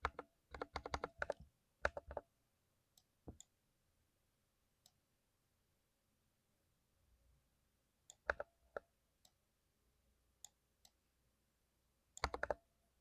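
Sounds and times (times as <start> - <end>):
mechanical keyboard keystrokes: 0.0 - 2.2, 12.2 - 12.6.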